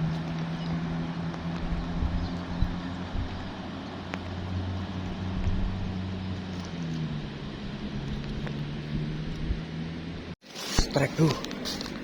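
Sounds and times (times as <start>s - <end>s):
continuous noisy background: 0.0s - 12.0s
engine running with low hum: 0.0s - 12.0s.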